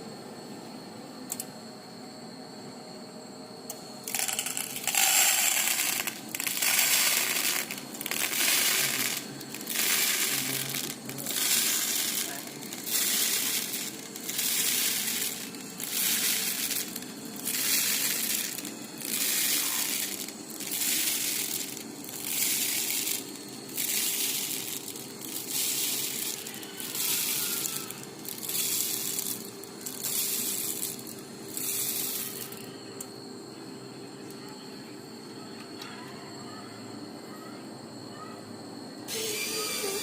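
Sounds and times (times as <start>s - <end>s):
machine hum: 0.0s - 34.4s
machine hissing bursts: 4.0s - 32.7s, 39.1s - 40.0s.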